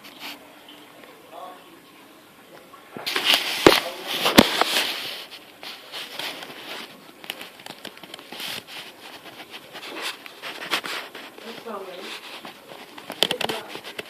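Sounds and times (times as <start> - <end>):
plastic crinkling: 3.0 - 14.0.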